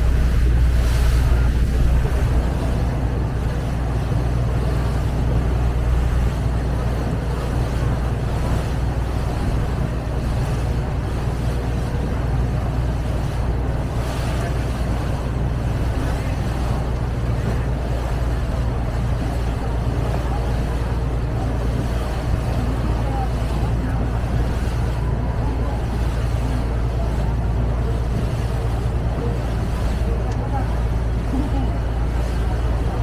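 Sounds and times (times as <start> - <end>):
wind noise: 0.0 - 4.6
boat engine droning: 0.0 - 33.0
water noise: 0.0 - 33.0.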